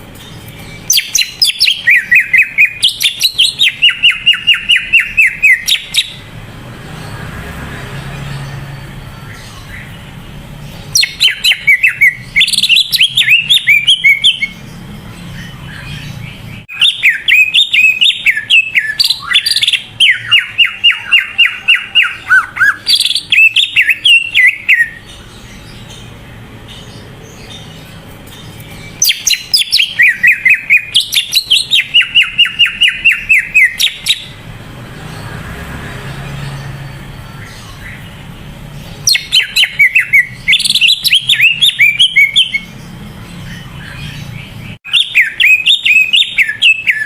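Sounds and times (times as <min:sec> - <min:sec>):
bird singing whistled notes: 0:00.0 - 0:06.3, 0:10.8 - 0:26.1, 0:26.7 - 0:34.4, 0:38.8 - 0:47.0.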